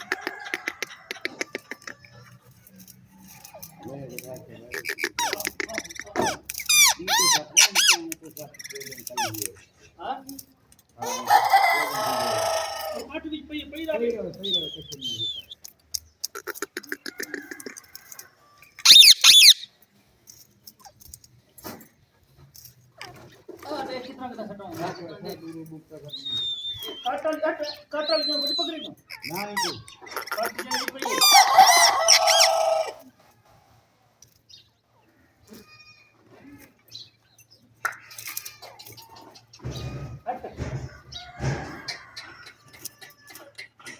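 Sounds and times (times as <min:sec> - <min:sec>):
parrot chattering: 0:04.7 - 0:09.5, 0:18.8 - 0:19.7, 0:28.5 - 0:32.9
parrot shrill screeches: 0:06.2 - 0:08.0, 0:18.8 - 0:19.7, 0:30.7 - 0:33.0
parrot calls: 0:18.8 - 0:19.7, 0:28.1 - 0:33.0.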